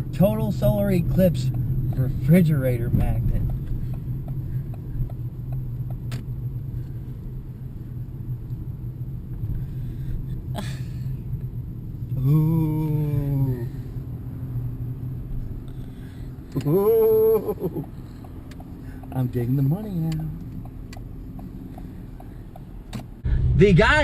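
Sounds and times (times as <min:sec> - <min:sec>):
car interior rumble: 0:00.0 - 0:24.0
sharp click: 0:05.5 - 0:06.3.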